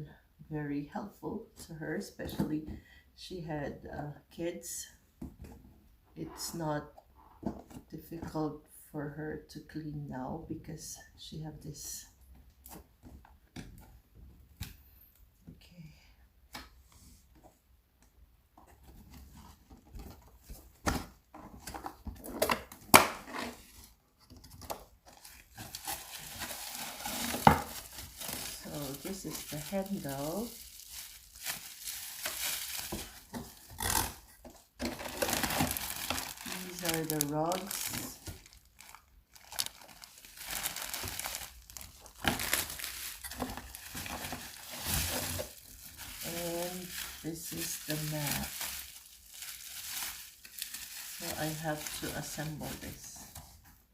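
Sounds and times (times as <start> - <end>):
plastic packaging crinkling and tearing: 24.7 - 53.1.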